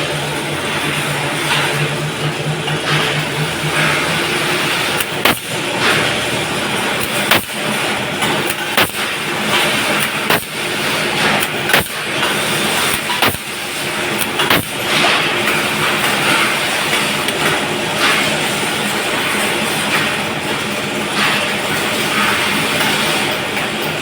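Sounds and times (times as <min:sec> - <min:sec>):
coil-making machine running: 0:00.0 - 0:24.0
sharp machine clack: 0:00.6 - 0:18.6.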